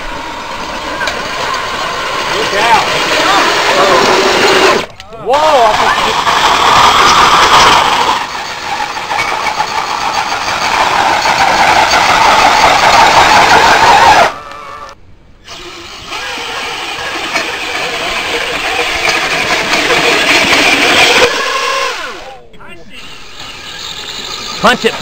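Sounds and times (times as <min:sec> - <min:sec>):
radio-controlled truck motor: 0:05.8 - 0:13.9, 0:15.5 - 0:22.3, 0:22.9 - 0:25.0.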